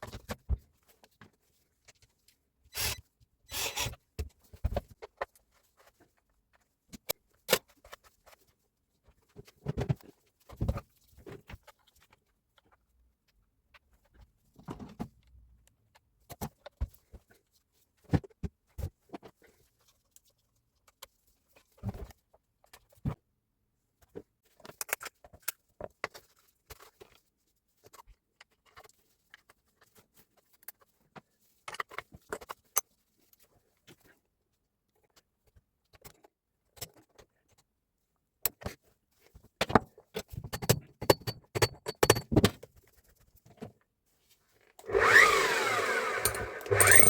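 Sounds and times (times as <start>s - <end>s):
tool clicks and knocks on workbench: 46.2s - 47.0s.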